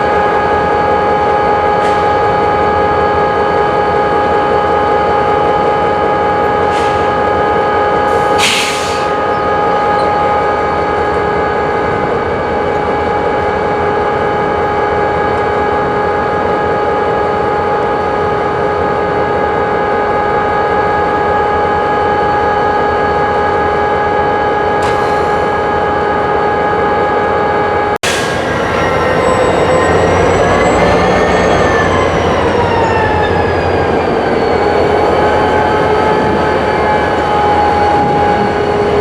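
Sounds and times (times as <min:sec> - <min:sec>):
diesel locomotive running: 0:00.0 - 0:39.0
mechanical whine: 0:28.0 - 0:39.0.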